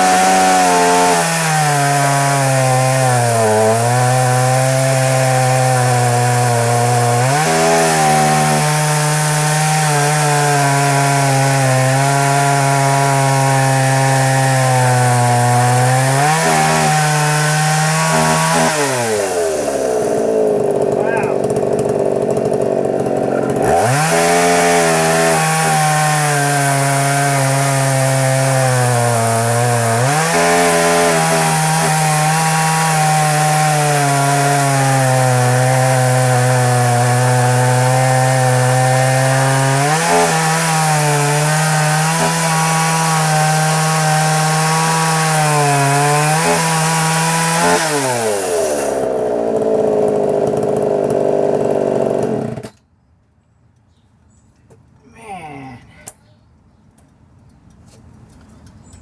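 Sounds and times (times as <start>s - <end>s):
chainsaw cutting log: 0.0s - 52.9s.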